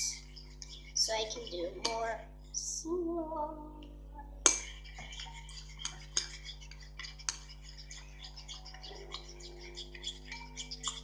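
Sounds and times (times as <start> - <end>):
spoon clinking against bowl: 4.5 - 11.0.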